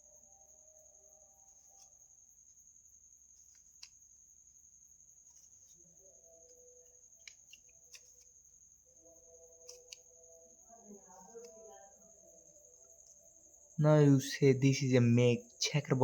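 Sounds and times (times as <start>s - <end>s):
faint high-pitched whine: 0.0s - 16.0s.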